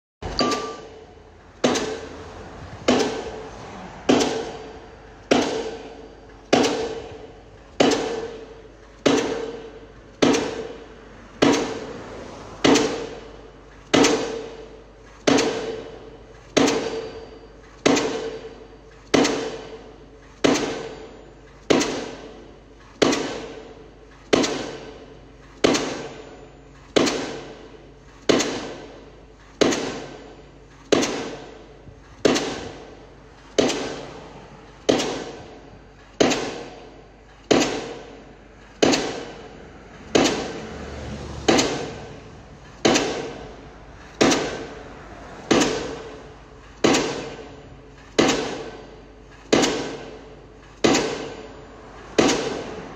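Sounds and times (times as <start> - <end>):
sharp ringing strikes: 0.2 - 1.1, 16.6 - 18.8.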